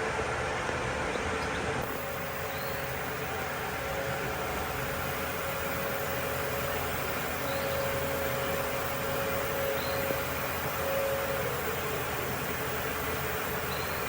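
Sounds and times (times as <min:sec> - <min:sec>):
machine running hiss: 0:01.8 - 0:14.0.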